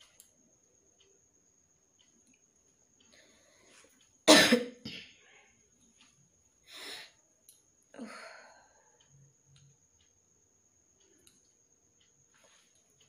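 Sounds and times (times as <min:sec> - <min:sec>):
woman coughing: 0:04.3 - 0:05.1.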